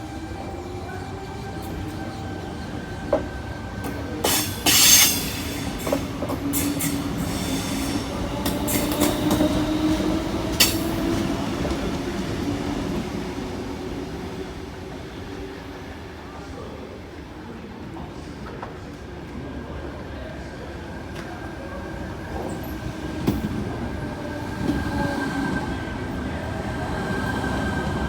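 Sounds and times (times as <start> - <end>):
train wheels clacking over rail joints: 3.8 - 11.9.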